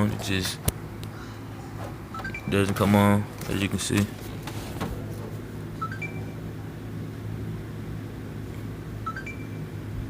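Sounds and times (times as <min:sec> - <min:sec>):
steady low hum: 0:00.0 - 0:10.0
rising two-note beep: 0:05.8 - 0:06.4, 0:09.1 - 0:09.7.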